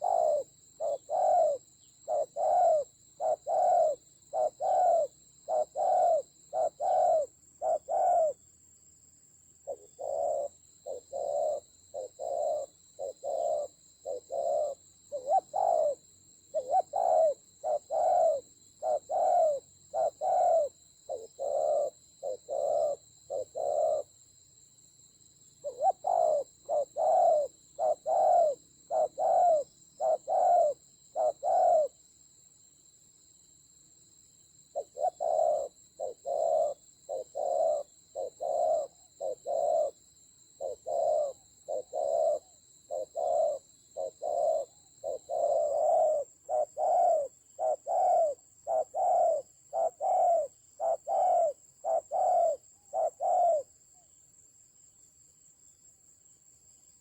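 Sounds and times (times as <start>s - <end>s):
doves cooing: 0.0s - 8.4s, 9.7s - 24.1s, 25.6s - 32.0s, 34.7s - 40.0s, 40.6s - 53.6s.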